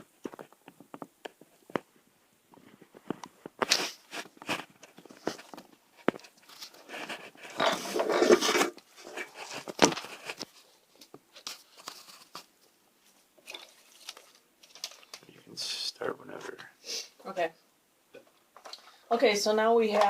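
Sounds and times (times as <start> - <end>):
small clicks and rubbing: 0.0 - 15.3
scraping: 2.5 - 10.8.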